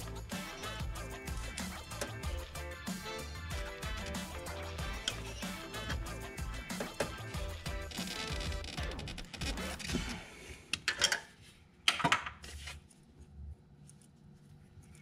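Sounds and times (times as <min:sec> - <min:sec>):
background music: 0:00.0 - 0:10.4.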